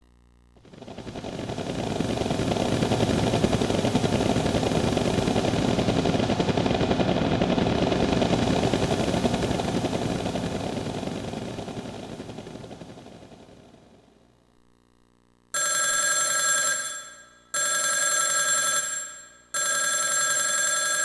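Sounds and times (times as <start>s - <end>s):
synthesized rattling engine noise: 0.6s - 14.2s.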